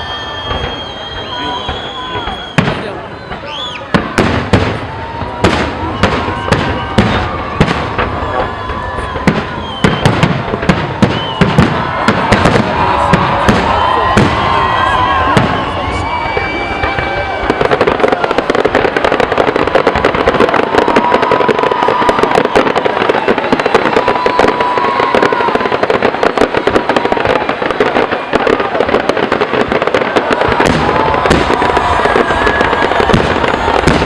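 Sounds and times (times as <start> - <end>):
fireworks banging and crackling: 0.0 - 34.0
fireworks whistling: 0.0 - 34.0.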